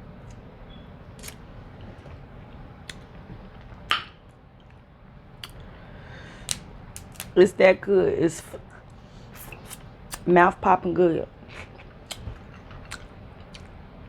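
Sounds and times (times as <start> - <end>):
steady low hum: 0.0 - 14.0
wet chewing clicks and smacks: 5.4 - 5.7, 11.6 - 13.8.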